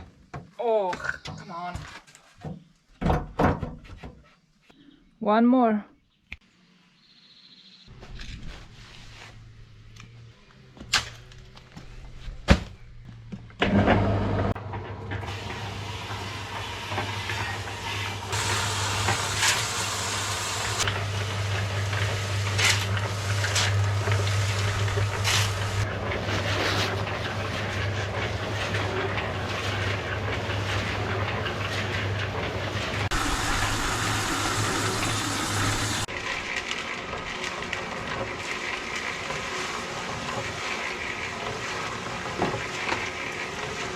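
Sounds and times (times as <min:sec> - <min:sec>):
concrete mixer humming: 0:13.3 - 0:43.9.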